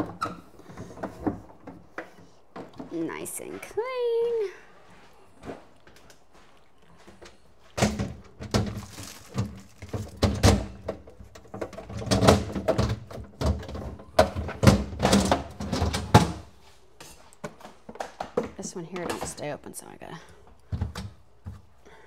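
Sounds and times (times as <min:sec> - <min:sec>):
thunks and clatters in refrigerator: 0:00.0 - 0:03.2, 0:07.7 - 0:16.5, 0:20.7 - 0:21.7.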